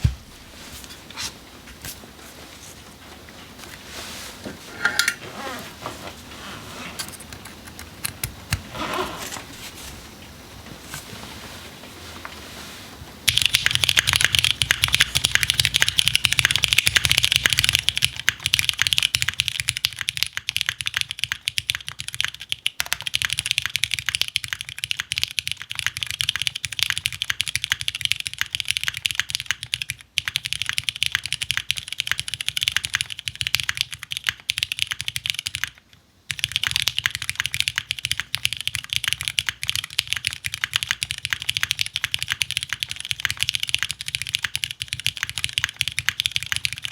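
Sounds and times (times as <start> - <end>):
fast mechanical keyboard typing: 7.1 - 8.7, 13.3 - 46.9.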